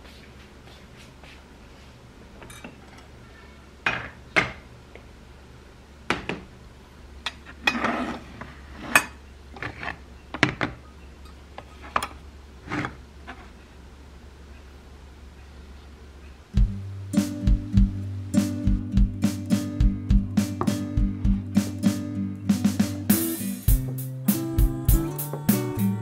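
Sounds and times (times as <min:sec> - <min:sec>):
dishes clinking and knocking: 0:02.4 - 0:02.8.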